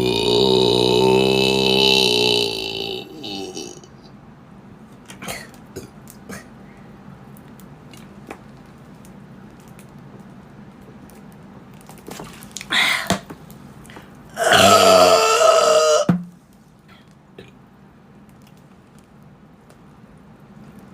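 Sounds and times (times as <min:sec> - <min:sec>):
person belching: 0:00.0 - 0:04.0, 0:14.3 - 0:16.1.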